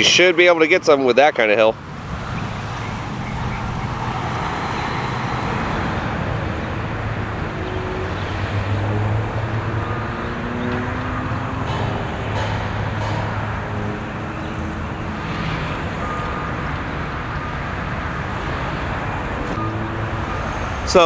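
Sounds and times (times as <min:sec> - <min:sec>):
traffic rushing: 0:00.0 - 0:21.0
low engine hum: 0:01.8 - 0:21.0.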